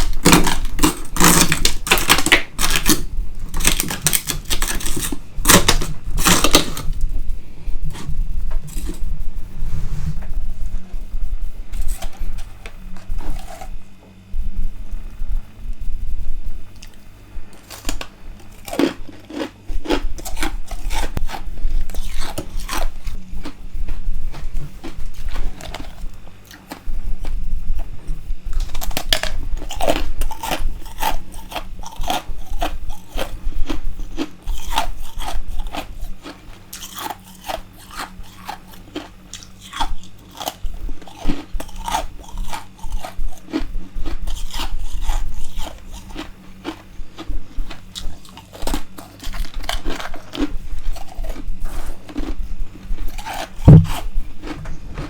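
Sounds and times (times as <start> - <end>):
crunching frost chewing: 0.0 - 9.1, 11.7 - 13.8, 16.7 - 55.0
low thud: 53.6 - 54.0.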